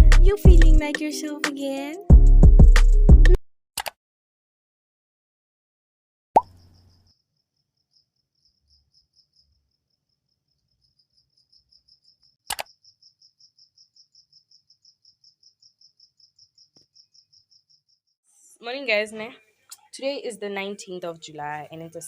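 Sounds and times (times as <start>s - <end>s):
cricket chirping: 6.5s - 18.2s
sharp double click: 12.5s - 12.7s.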